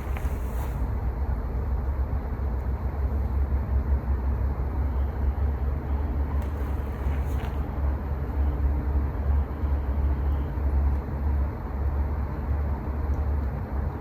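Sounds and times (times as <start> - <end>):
faint short rustles: 0.0 - 1.0, 6.3 - 8.5
steady low rumbling: 0.0 - 2.2.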